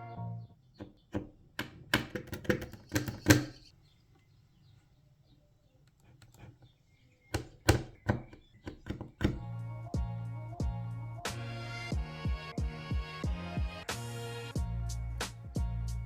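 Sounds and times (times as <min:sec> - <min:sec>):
plastic parts clicking: 0:00.8 - 0:03.7, 0:05.8 - 0:09.4.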